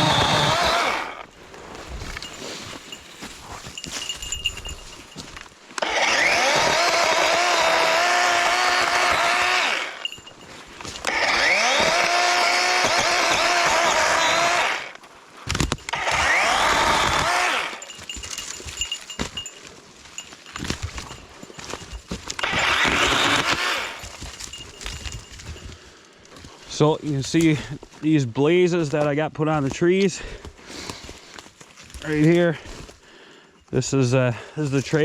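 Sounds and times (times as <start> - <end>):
electric chainsaw whine: 0.0 - 1.3, 5.8 - 10.2, 10.8 - 15.0, 15.9 - 18.0, 22.3 - 24.5.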